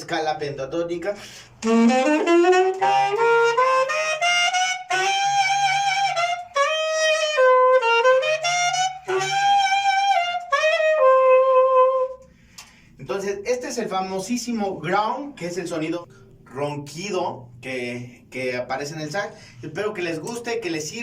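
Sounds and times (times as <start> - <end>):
saxophone with raspy growl tone: 1.6 - 12.2.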